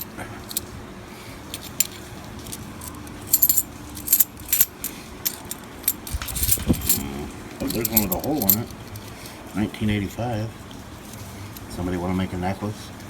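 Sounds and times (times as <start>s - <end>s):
coins clinking: 0.0s - 0.7s, 1.5s - 9.4s.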